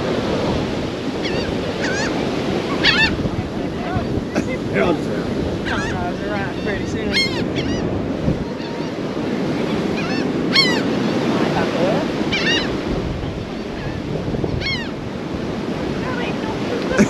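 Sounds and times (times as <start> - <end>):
gulls calling: 0.0 - 17.0
surf breaking: 0.0 - 17.0
wind on microphone: 0.0 - 17.0.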